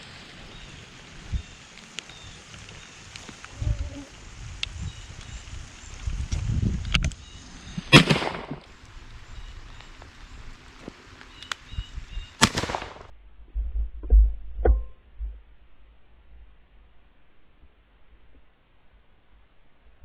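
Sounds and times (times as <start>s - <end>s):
shotgun shots: 7.9s - 8.7s, 12.4s - 13.1s
low thumps: 13.4s - 15.8s.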